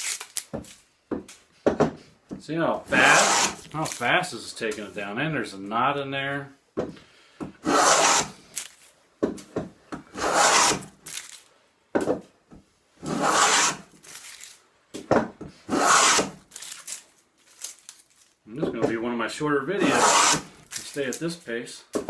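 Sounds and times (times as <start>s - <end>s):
hand plane cutting wood: 2.9s - 3.6s, 7.6s - 8.4s, 10.1s - 10.9s, 13.0s - 13.9s, 15.7s - 16.4s, 19.8s - 20.5s.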